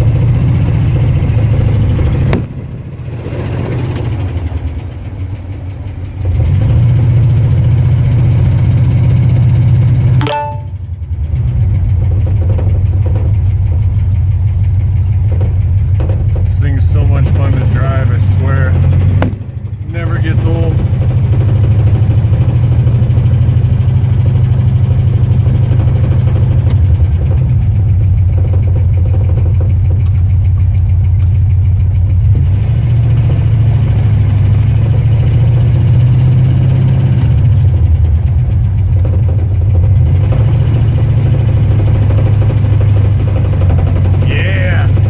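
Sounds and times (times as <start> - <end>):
pickup truck engine idling: 0.0 - 10.0, 11.1 - 35.7.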